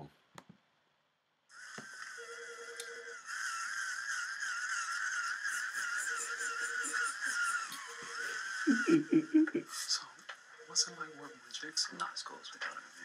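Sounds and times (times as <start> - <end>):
warbling electronic tone: 2.1 - 9.2
low rapid beeping: 5.2 - 9.6, 10.5 - 12.4.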